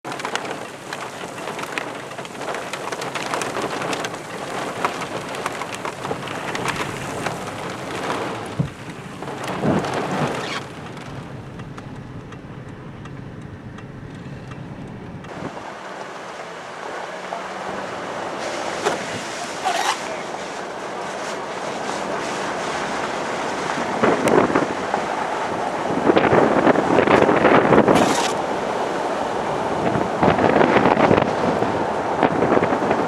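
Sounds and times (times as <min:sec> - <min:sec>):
raindrops ticking near microphone: 0:00.1 - 0:15.4
heavy rain: 0:00.1 - 0:33.0.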